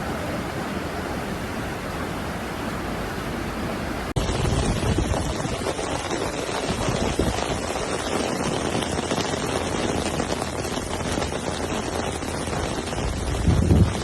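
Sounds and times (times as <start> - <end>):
rushing flood water: 0.0 - 14.0
wind buffeting microphone: 4.2 - 14.0.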